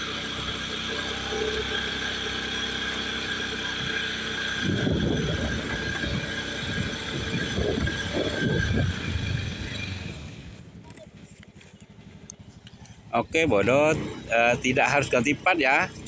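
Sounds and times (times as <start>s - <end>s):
scooter engine running: 0.0s - 16.0s
irregular low rumbles: 4.6s - 16.0s.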